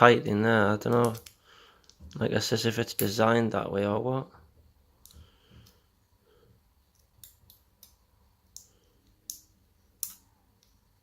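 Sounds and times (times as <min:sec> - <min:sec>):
metallic clicks of lock picking: 0:06.9 - 0:10.7.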